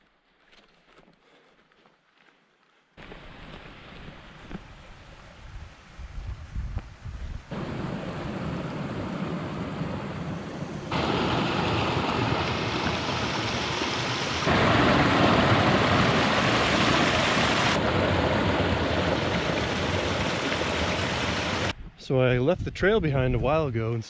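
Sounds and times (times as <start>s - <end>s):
stream water flowing: 7.5s - 21.7s.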